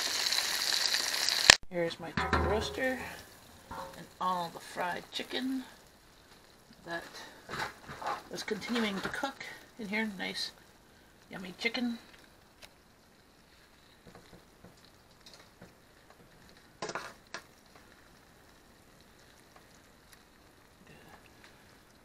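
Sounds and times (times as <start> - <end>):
chicken sizzling: 0.0 - 22.0.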